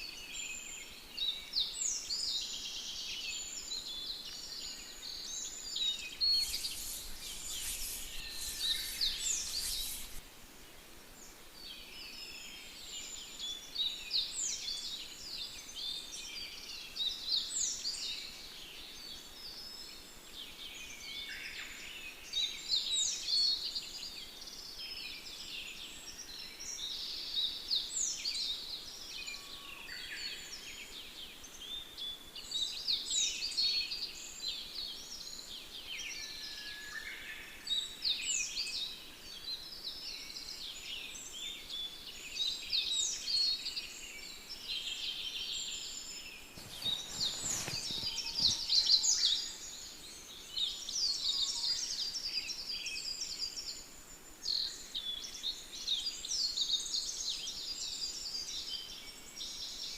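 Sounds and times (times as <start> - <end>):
birds chirping and singing: 3.3 - 10.2, 40.2 - 53.8
brief rustle: 6.1 - 10.2, 46.5 - 49.2.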